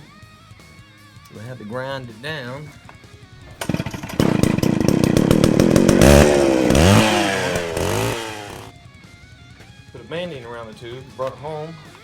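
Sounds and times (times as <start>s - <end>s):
loud motor pulsing: 3.6s - 8.7s.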